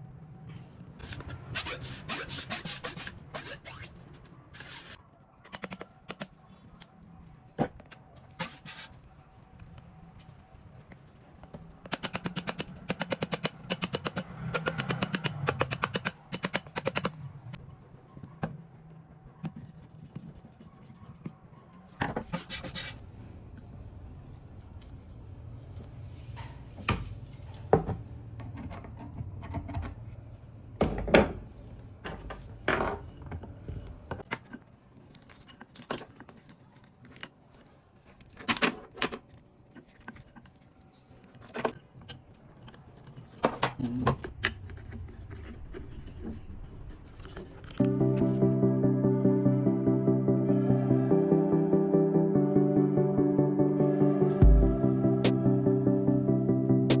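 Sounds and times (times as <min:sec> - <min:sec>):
rapid clicking: 0:11.9 - 0:17.2.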